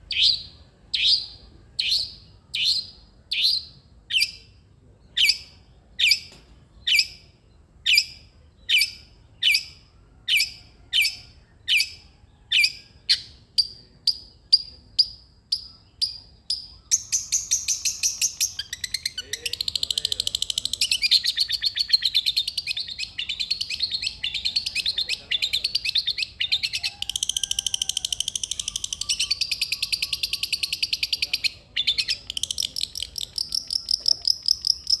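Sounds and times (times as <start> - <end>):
bird chattering song: 0.0 - 35.0
bird calling sharp notes: 14.1 - 35.0.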